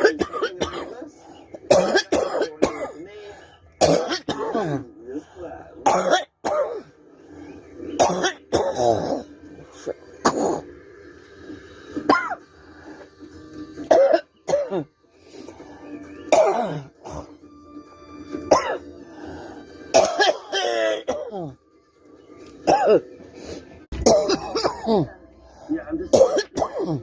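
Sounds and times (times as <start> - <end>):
woman coughing: 0.0 - 1.0, 1.6 - 3.0, 3.8 - 4.9, 5.8 - 6.9, 8.0 - 9.3, 10.2 - 10.6, 12.1 - 12.4, 13.8 - 14.9, 16.3 - 17.3, 18.5 - 18.8, 19.9 - 21.6, 22.7 - 23.1, 24.0 - 25.1, 26.1 - 27.0
faint background music: 0.0 - 27.0.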